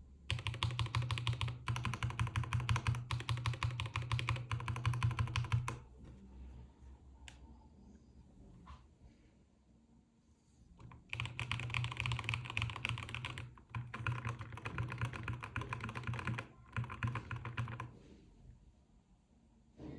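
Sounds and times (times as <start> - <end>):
mechanical keyboard typing: 0.3 - 5.8, 10.8 - 17.9.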